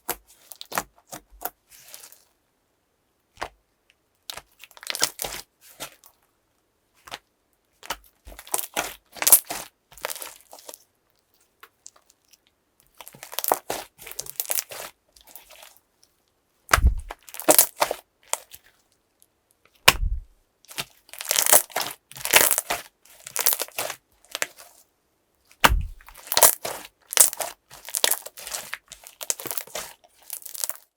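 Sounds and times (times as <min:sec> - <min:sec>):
dull thumps: 0:16.7 - 0:17.2, 0:19.9 - 0:20.3, 0:25.6 - 0:26.1
slime crackling and popping: 0:16.7 - 0:18.5, 0:19.8 - 0:24.6, 0:25.6 - 0:30.9.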